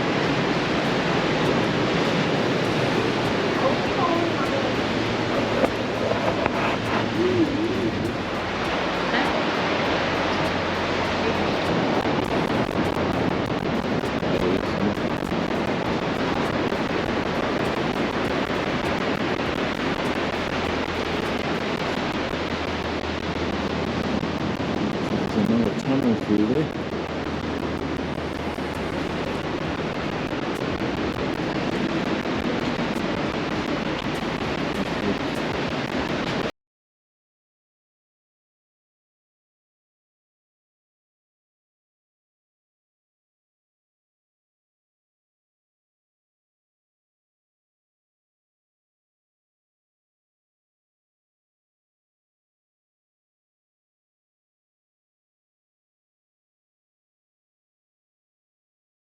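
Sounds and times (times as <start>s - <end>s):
ocean waves breaking: 0.0s - 36.5s.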